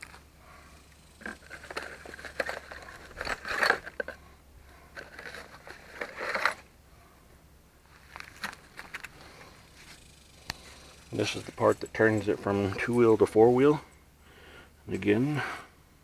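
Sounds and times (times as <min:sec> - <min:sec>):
locking hub clicks and scrapes: 0:00.8 - 0:06.7, 0:08.0 - 0:13.3.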